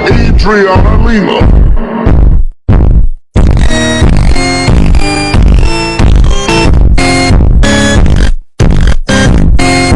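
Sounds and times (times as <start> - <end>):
distorted electronic alarm tones: 3.4 - 9.9.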